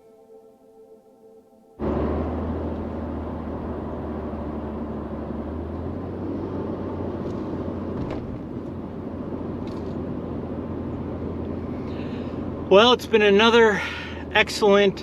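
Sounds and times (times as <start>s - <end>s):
vehicle engine and road noise: 1.8s - 15.0s.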